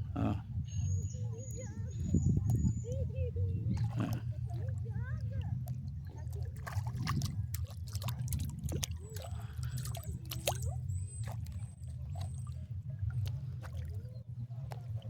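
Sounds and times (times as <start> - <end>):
low rumble: 0.0 - 15.0
water dripping and trickling: 1.5 - 15.0
wet clicks and squishes: 5.6 - 12.3.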